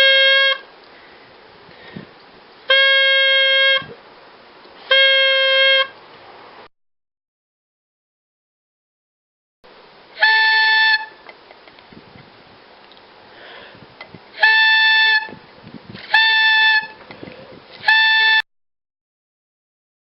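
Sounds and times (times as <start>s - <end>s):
high-pitched air horn blasts: 0.0s - 0.7s, 2.7s - 4.0s, 4.8s - 6.0s, 10.2s - 11.2s, 14.4s - 15.4s, 16.0s - 17.0s, 17.8s - 18.5s.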